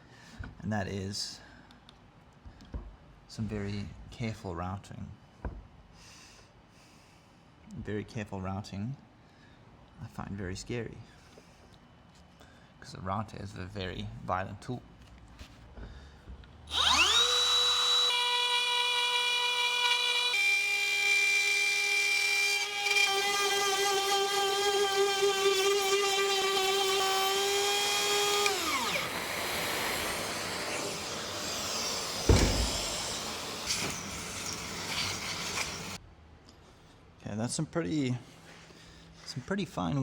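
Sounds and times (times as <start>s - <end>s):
wood router whining: 16.7s - 36.0s
knock: 32.3s - 32.8s.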